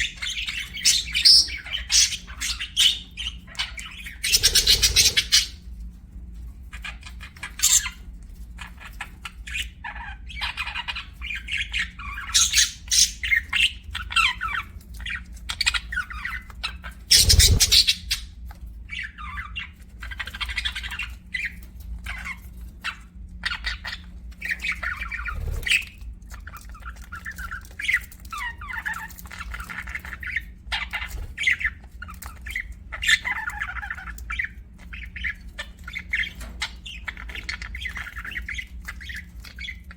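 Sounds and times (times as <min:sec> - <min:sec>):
budgerigars chirping and chattering: 0:00.0 - 0:05.8, 0:06.6 - 0:39.9
harsh bird squawk: 0:04.0 - 0:05.6, 0:17.1 - 0:18.2.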